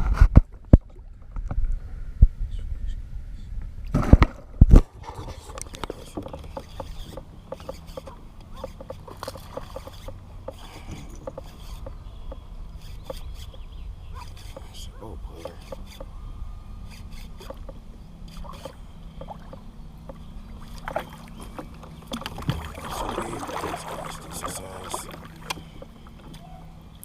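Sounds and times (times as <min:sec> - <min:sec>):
knocks and thumps on boat: 0:03.9 - 0:13.3, 0:17.4 - 0:26.4.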